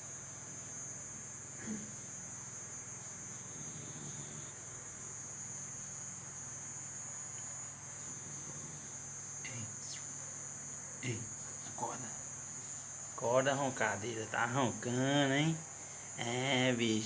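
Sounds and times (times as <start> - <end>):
crickets chirring: 0.0 - 17.0
dog snoring: 3.1 - 5.2, 8.0 - 9.2.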